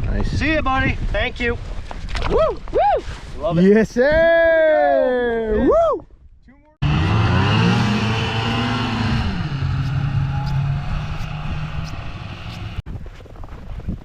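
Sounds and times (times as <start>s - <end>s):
engine running: 6.8s - 12.8s.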